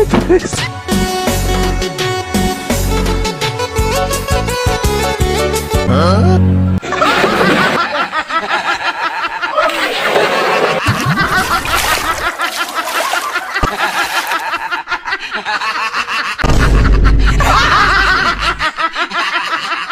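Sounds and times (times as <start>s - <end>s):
people laughing: 6.8s - 19.9s.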